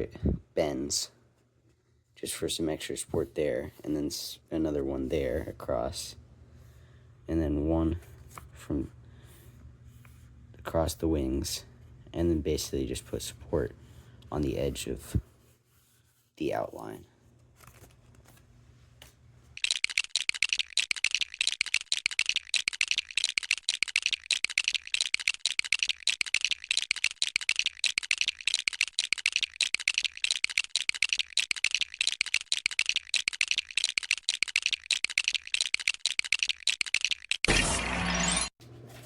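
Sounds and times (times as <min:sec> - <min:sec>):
rapid rattle of sharp clicks: 0:19.6 - 0:37.5.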